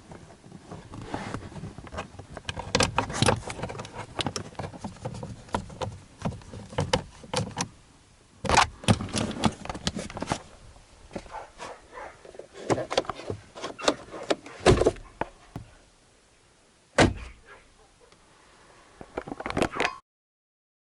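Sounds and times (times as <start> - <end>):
glove compartment plastic clicks: 1.8 - 7.7, 8.4 - 10.4.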